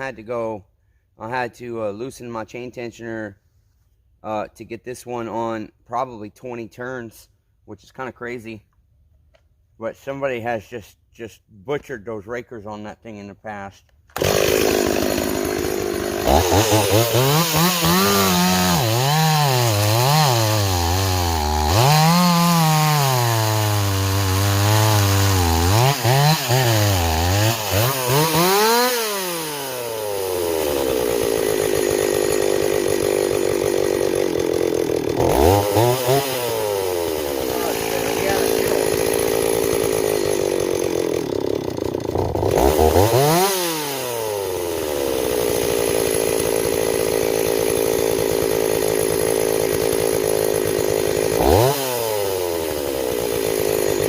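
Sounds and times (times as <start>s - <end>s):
chainsaw revving: 14.1s - 54.0s.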